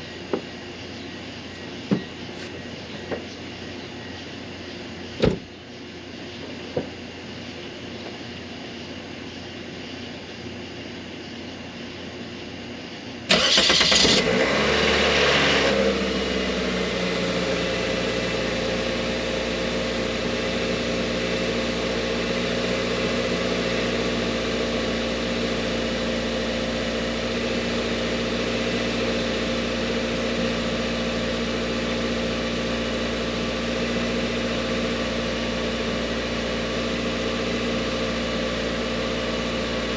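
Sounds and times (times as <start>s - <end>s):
car engine starting and idling: 13.2s - 39.9s.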